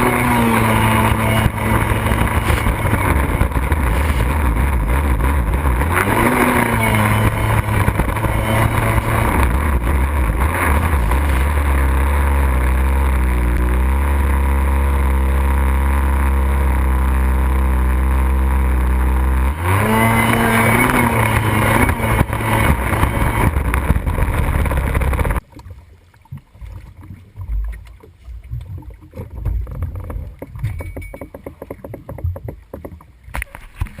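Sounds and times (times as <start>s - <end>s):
water splashing: 0.0s - 15.3s, 20.4s - 34.0s
jet ski engine revving: 0.0s - 25.4s.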